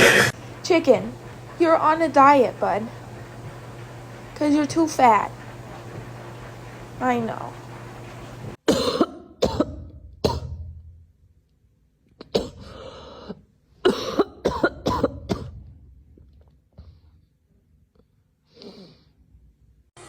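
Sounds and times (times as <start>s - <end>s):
harsh cough-like bursts: 0.0s - 0.4s, 8.6s - 10.6s, 12.2s - 15.7s.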